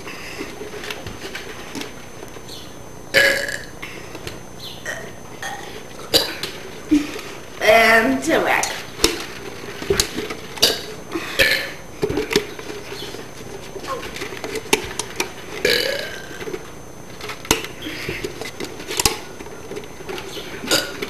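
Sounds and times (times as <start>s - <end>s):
person burping: 3.1s - 3.7s, 4.8s - 7.0s, 10.6s - 11.8s, 15.6s - 16.4s, 20.7s - 21.0s.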